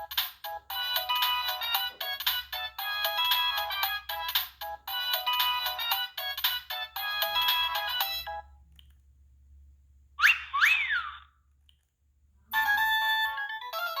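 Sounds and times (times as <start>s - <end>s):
polyphonic phone ringtone melody: 0.0s - 8.5s, 12.5s - 14.0s.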